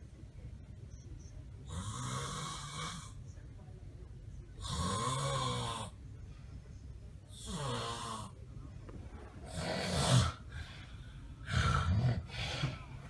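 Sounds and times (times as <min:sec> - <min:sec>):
person snoring loudly: 0:07.4 - 0:08.3.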